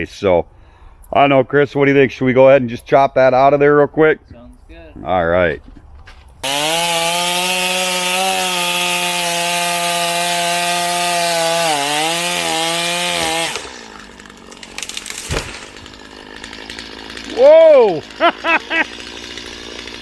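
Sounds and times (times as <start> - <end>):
chainsaw cutting through tree trunk: 6.4 - 20.0.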